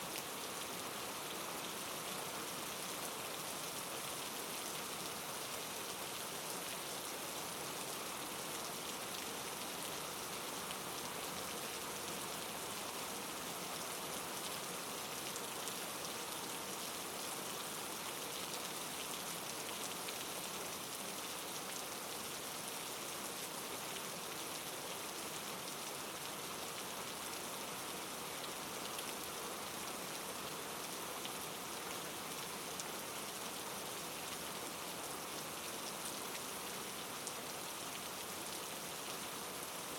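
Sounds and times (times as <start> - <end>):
rain falling: 0.0 - 39.9.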